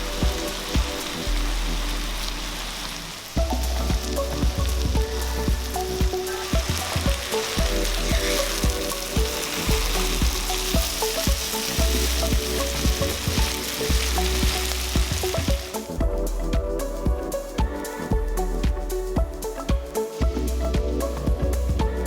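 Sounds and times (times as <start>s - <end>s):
mushrooms and onions sizzling in oil: 0.0s - 16.9s.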